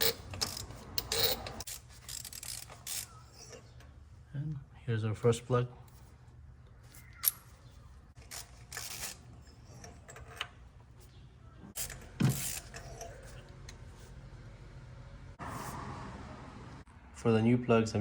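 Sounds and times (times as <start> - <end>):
metal parts scraping: 0.0 - 3.8, 8.2 - 10.6, 11.7 - 13.4.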